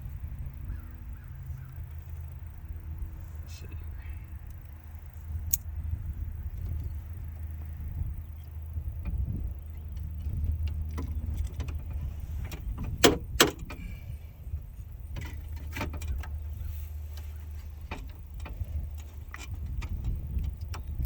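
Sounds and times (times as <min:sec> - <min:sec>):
small plastic and metal clicks: 0:05.5 - 0:05.7.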